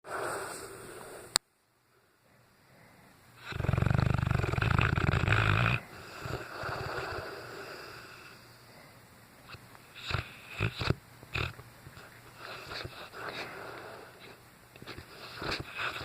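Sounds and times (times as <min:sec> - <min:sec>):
dog snoring: 0:03.4 - 0:08.4, 0:09.5 - 0:16.0.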